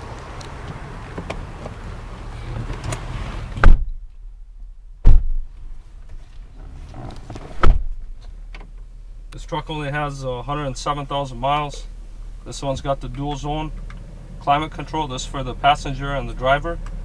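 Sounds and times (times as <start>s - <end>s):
outdoor noise: 0.0s - 17.0s
car door slamming: 2.7s - 4.2s, 5.0s - 8.9s.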